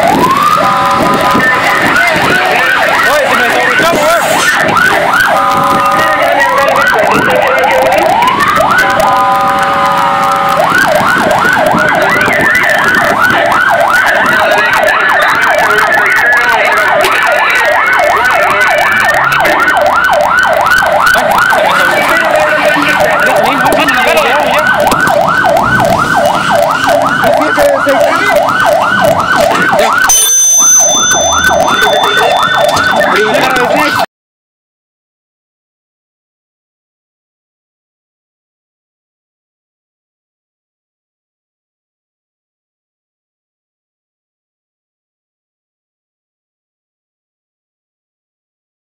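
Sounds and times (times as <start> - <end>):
fire engine siren yelping: 0.0 - 34.1.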